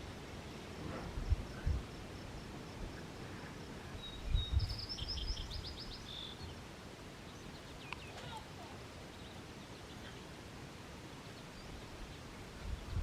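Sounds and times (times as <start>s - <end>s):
wind gusting against microphone: 0.0s - 7.0s, 11.6s - 13.0s
small bird chirping: 4.0s - 6.5s.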